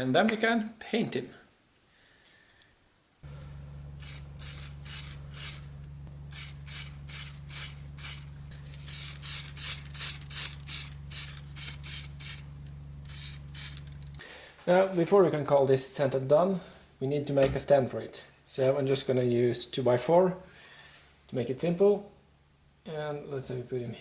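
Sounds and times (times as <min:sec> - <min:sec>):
steady low hum: 0:03.2 - 0:15.4
sandpaper rubbing on wood: 0:04.0 - 0:05.7, 0:06.3 - 0:12.5.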